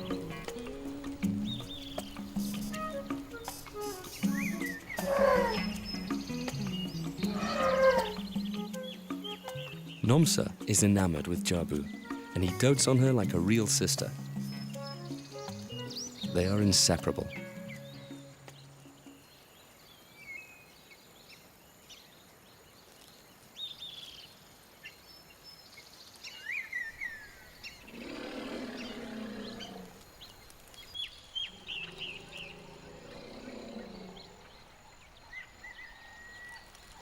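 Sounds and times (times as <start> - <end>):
drawn-out low animal calls: 0.0 - 8.7, 27.7 - 30.1, 31.4 - 34.8
bird chirps: 0.0 - 10.1, 26.3 - 37.0
outdoor ambience: 17.4 - 37.0.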